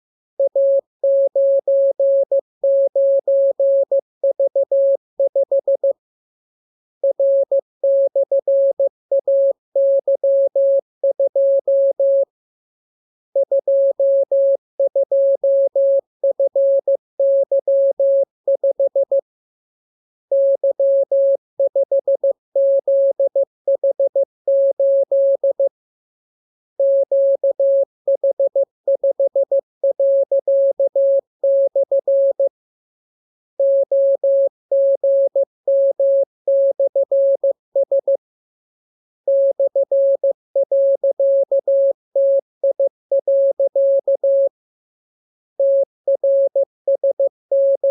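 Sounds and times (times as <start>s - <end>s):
morse code tone: 45.6s - 47.9s.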